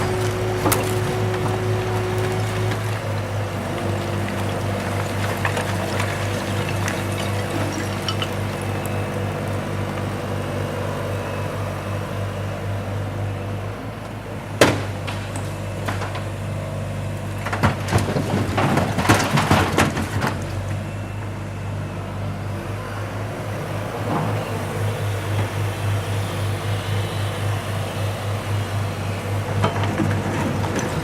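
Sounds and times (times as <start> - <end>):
diesel loader engine running: 0.0 - 31.0
metal clanks and clatter: 5.1 - 8.6.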